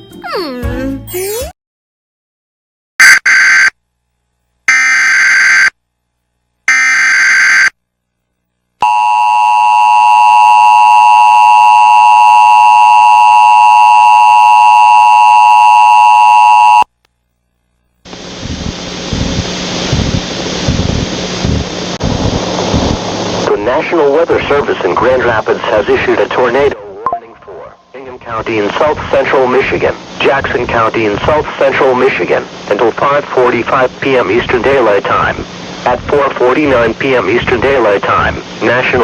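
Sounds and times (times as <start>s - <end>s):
low hum: 7.8s - 29.2s
two-tone attention signal: 8.8s - 16.9s.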